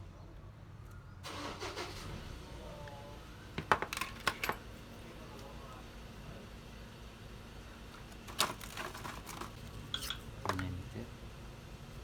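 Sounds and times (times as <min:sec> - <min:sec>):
metal tools scraping: 0:08.8 - 0:10.7.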